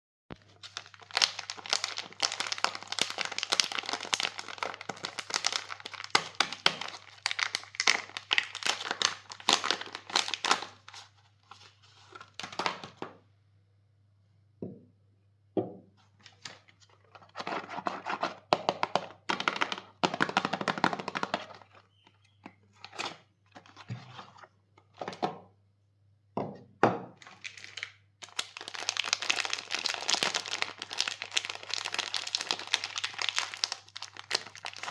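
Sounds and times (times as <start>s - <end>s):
wrapper crinkling and tearing: 0.3s - 13.0s, 27.2s - 34.9s.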